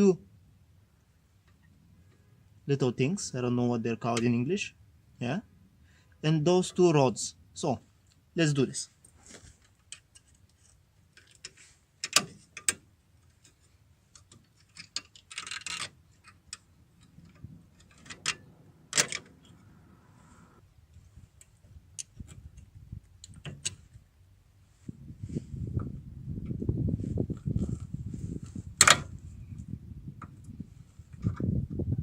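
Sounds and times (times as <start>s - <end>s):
low rumble: 17.2s - 20.7s
metallic clicks of brake hardware: 21.4s - 24.0s.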